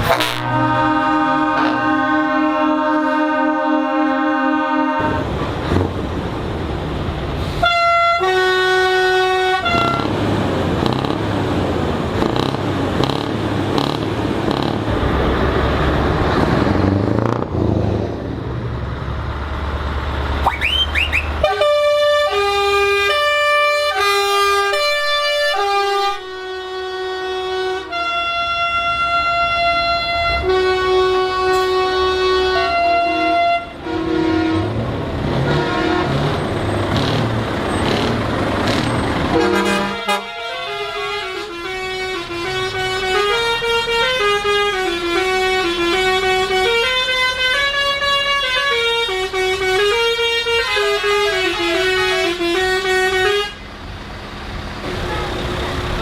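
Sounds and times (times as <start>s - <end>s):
multi-tone truck horn chord: 0.0s - 5.3s, 7.6s - 10.2s, 21.4s - 36.4s, 39.3s - 53.6s, 54.9s - 56.0s
musical horn playing a tune: 0.0s - 5.3s, 7.6s - 10.2s, 20.5s - 34.8s, 35.4s - 36.3s, 39.3s - 53.6s
truck air noise: 0.0s - 56.0s
truck engine: 0.0s - 56.0s.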